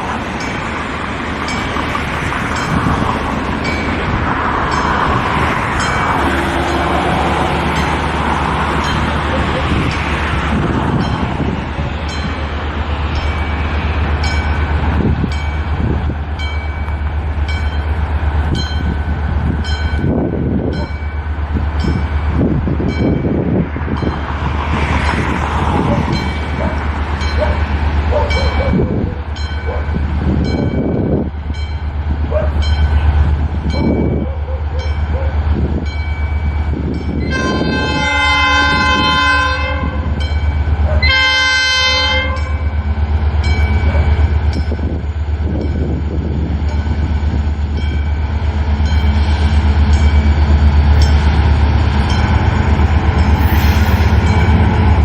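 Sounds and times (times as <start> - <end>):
locomotive engine rumble: 0.0 - 55.0
train horn: 37.2 - 40.2, 40.8 - 42.6.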